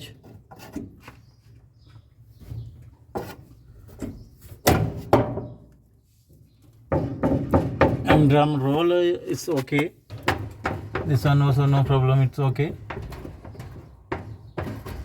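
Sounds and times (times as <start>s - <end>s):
machine parts knocking and clunking: 10.0s - 15.0s.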